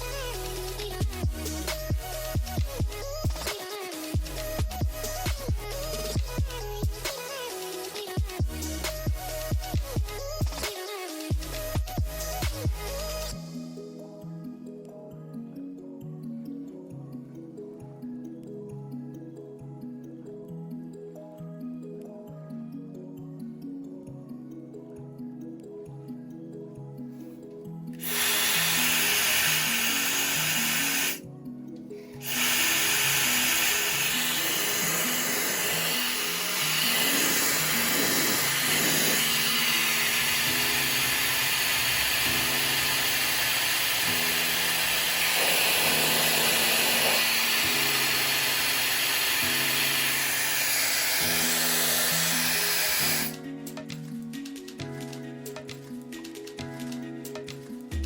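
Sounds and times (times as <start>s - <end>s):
background music: 0.0s - 58.0s
hair dryer running: 28.0s - 31.2s, 32.2s - 53.4s.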